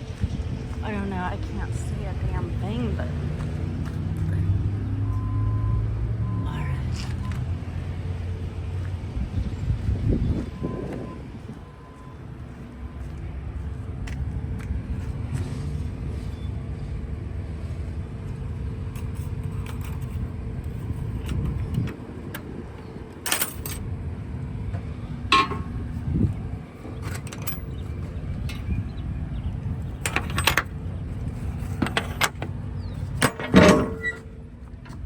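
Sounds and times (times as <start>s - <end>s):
diesel engine idling: 0.0s - 35.0s
metallic clanks and rattles: 18.9s - 23.9s, 25.3s - 26.0s, 26.8s - 29.1s, 29.8s - 35.0s.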